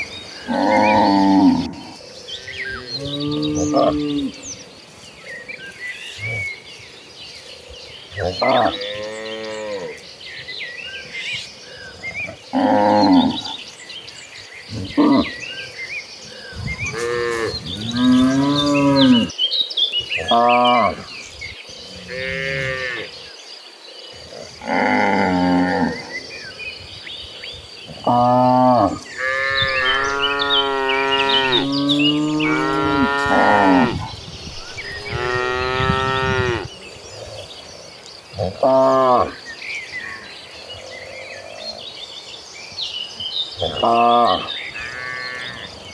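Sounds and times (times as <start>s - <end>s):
small birds chirping: 0.0s - 45.9s
cattle mooing: 28.0s - 36.7s.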